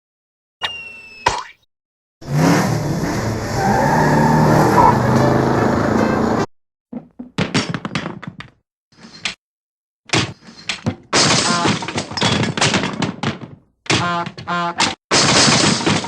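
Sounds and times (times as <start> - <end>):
cartoon knocks and thuds: 6.9 - 8.6, 10.1 - 16.0.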